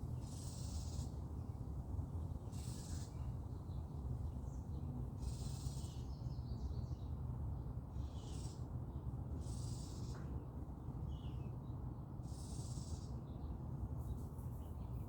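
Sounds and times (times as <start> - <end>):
high hissy bird calls: 0.1 - 1.1, 2.5 - 3.2, 5.2 - 6.1, 8.0 - 8.6, 9.4 - 10.2, 12.2 - 13.1.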